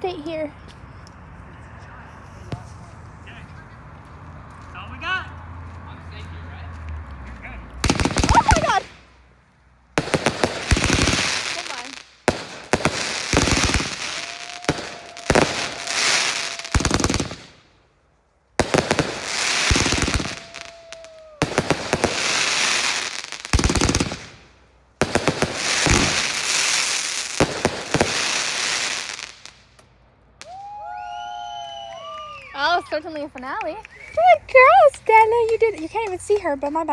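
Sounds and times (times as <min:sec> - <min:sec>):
fireworks bangs and crackling: 0:07.8 - 0:09.2, 0:09.9 - 0:17.7, 0:18.6 - 0:29.8.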